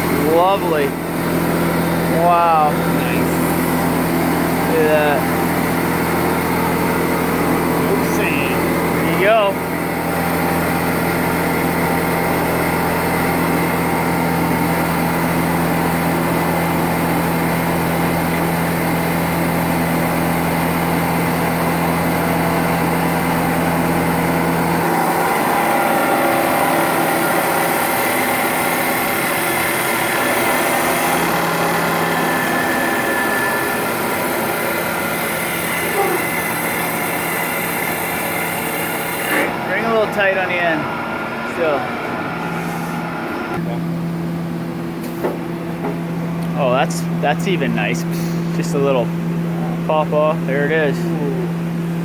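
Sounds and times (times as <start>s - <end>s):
wood lathe running: 0.0s - 43.7s.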